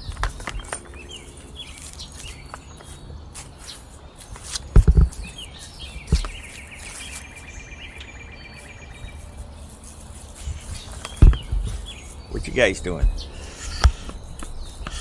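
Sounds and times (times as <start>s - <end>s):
songbird singing trill: 0.0s - 15.0s
loud thumps: 4.7s - 5.2s, 11.1s - 11.8s.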